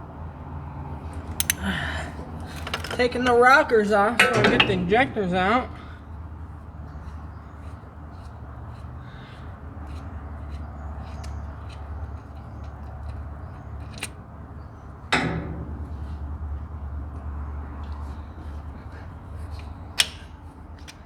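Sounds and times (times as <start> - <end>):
steady low hum: 0.8 - 8.7
light metallic clicks: 1.0 - 5.8, 9.9 - 21.0
ringing metal clank: 2.5 - 5.9, 15.1 - 17.3.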